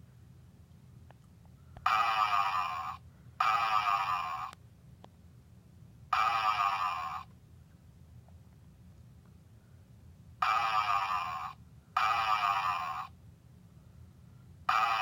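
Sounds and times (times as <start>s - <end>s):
electronic toy snores: 1.8s - 4.6s, 6.1s - 7.3s, 10.4s - 13.2s, 14.7s - 15.0s.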